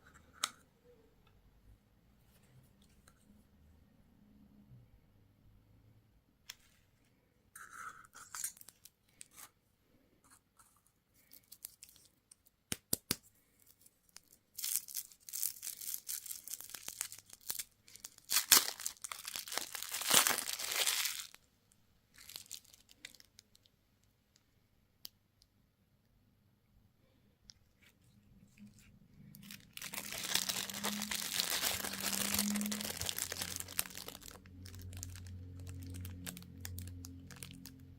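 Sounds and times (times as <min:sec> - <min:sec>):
candy wrapper tearing: 0:07.8 - 0:09.4, 0:11.2 - 0:21.4, 0:22.2 - 0:23.7, 0:29.3 - 0:37.9.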